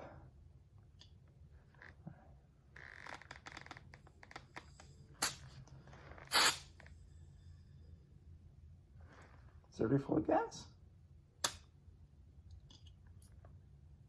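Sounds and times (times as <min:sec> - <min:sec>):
gas hissing: 0:05.2 - 0:05.6, 0:06.2 - 0:06.8.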